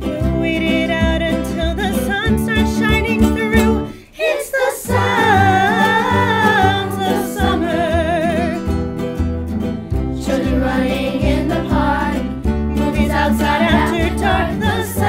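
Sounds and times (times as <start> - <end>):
person singing with vibrato: 0.0 - 8.7, 12.8 - 15.0
acoustic guitar: 0.0 - 15.0.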